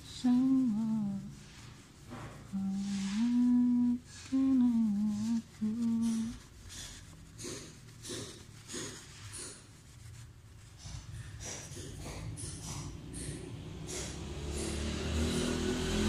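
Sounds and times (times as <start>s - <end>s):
person humming: 0.0s - 1.4s, 2.5s - 6.4s
soft scraping strokes: 0.0s - 13.4s.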